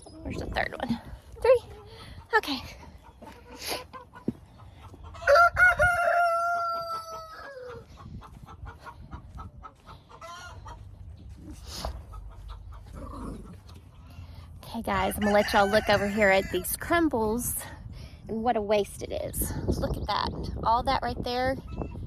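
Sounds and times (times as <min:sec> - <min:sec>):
hens clucking softly: 0:00.0 - 0:16.8
rooster crowing: 0:05.2 - 0:07.8, 0:15.1 - 0:16.6.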